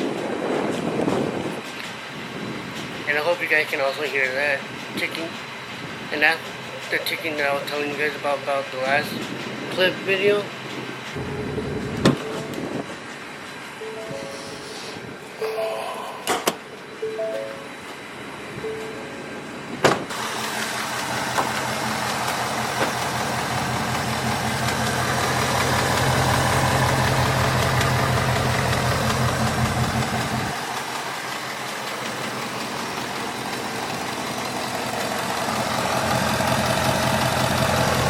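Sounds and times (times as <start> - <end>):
car engine idling with ticking: 20.1 - 38.0.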